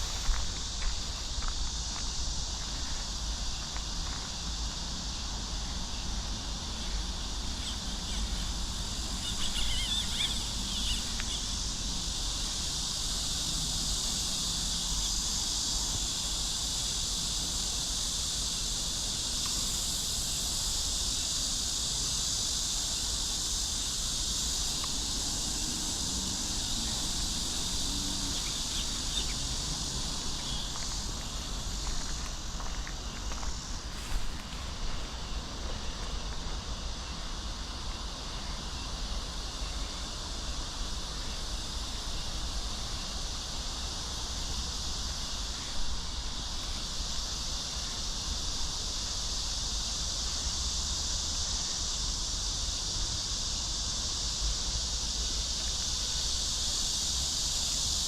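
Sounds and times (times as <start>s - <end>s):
insects chirping chorus: 0.0s - 58.0s
bird-like chirps: 9.2s - 11.4s.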